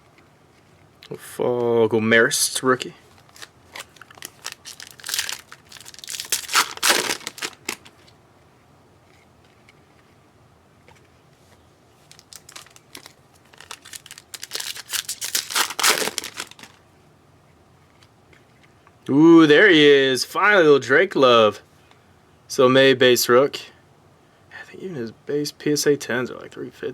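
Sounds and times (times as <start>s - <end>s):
foil wrapper tearing and crinkling: 3.2s - 7.9s, 12.1s - 16.8s.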